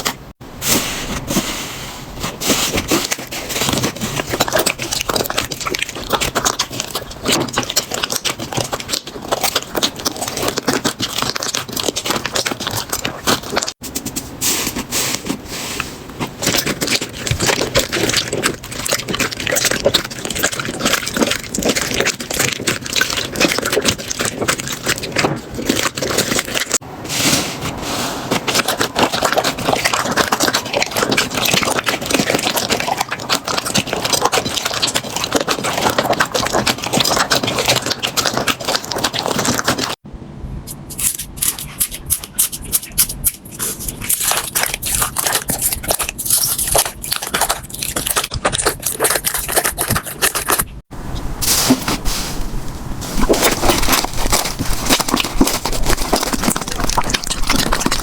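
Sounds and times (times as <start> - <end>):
slime crackling and popping: 40.7 - 50.7
crisp slime crackling: 40.7 - 50.8, 53.0 - 58.0.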